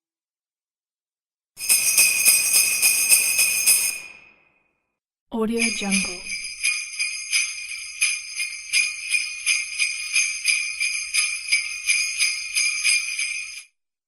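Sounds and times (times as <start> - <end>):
jingle bells shaken: 1.6 - 4.2, 5.4 - 13.7.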